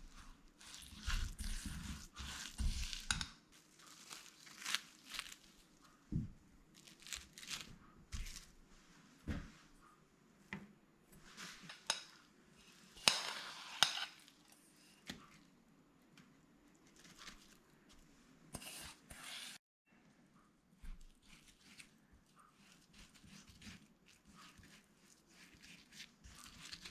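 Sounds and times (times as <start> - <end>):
crackly rustle: 2.4 - 6.1, 6.7 - 8.6.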